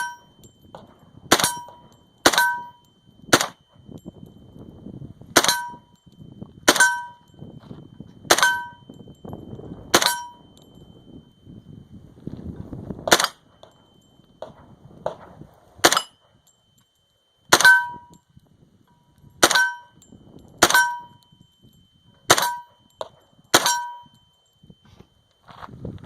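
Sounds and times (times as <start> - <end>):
steel target clanging: 0.0 - 3.9, 5.4 - 6.0, 6.7 - 7.4, 8.2 - 9.0, 9.9 - 10.6, 15.8 - 16.6, 17.5 - 18.2, 19.4 - 21.2, 22.1 - 24.2
submachine gun single shots: 3.3 - 3.6, 13.1 - 13.4, 15.8 - 16.1, 22.3 - 22.6.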